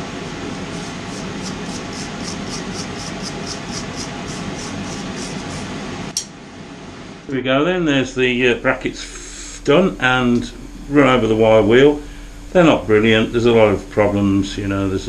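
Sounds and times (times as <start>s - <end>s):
wire wheel brushing steel: 0.4s - 5.8s.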